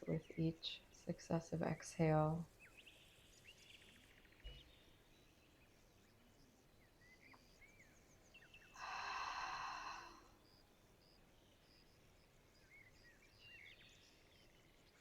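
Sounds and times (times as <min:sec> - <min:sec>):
forest ambience: 0:00.0 - 0:15.0
short birdsong chirps: 0:02.5 - 0:15.0
long breathy exhale: 0:08.8 - 0:10.4.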